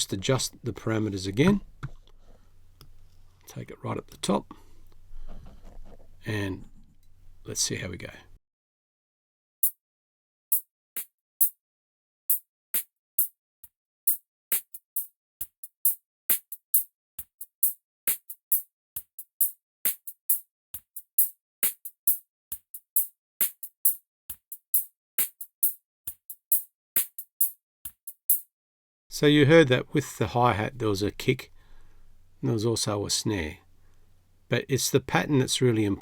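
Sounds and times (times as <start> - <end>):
hi-hat ticks: 12.3 - 13.4, 14.1 - 28.5.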